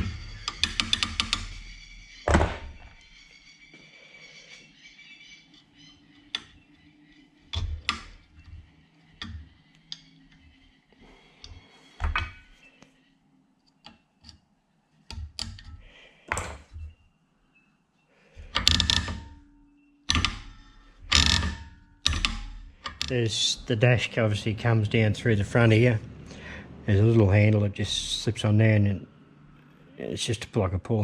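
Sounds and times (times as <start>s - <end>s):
metal parts clicking and clunking: 0.0s - 3.1s, 5.5s - 10.5s, 11.3s - 12.6s, 15.0s - 17.0s, 18.4s - 24.0s.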